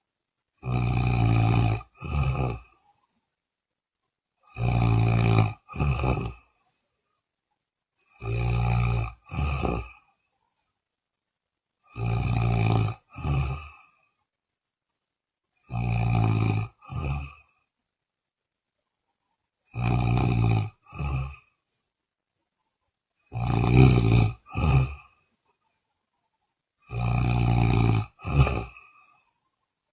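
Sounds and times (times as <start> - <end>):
person snoring loudly: 0.6 - 2.8, 4.4 - 6.6, 8.0 - 10.1, 11.8 - 14.1, 15.6 - 17.6, 19.7 - 21.6, 23.2 - 25.2, 26.8 - 29.2.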